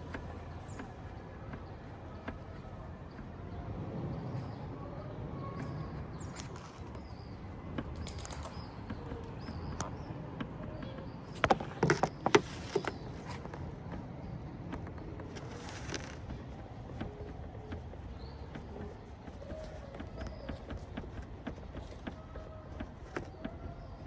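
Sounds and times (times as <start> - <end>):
road rumble: 0.0 - 24.0
sunroof knocking: 10.8 - 14.0.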